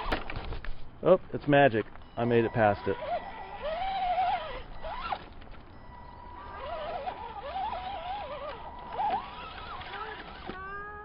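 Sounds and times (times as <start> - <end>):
electric motor whining: 2.2 - 11.0.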